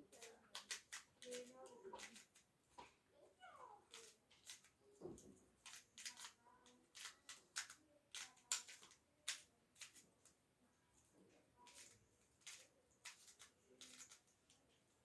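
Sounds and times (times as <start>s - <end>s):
plastic puzzle clicks and snaps: 5.7s - 10.0s.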